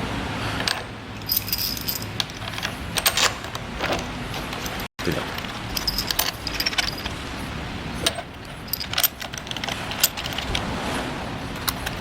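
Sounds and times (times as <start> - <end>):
metal tools clinking: 0.6 - 10.6, 11.6 - 12.0.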